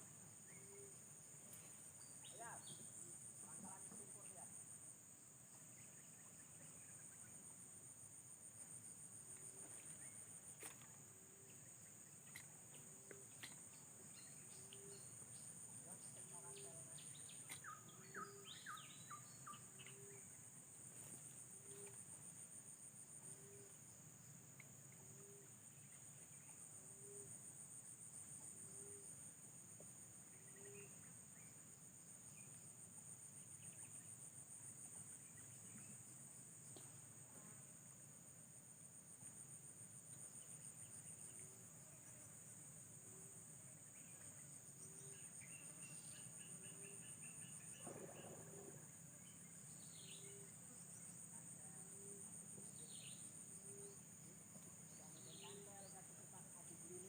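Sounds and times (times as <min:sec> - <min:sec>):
insect chorus trilling: 0:01.9 - 0:29.3, 0:30.0 - 0:37.2, 0:37.8 - 0:57.0.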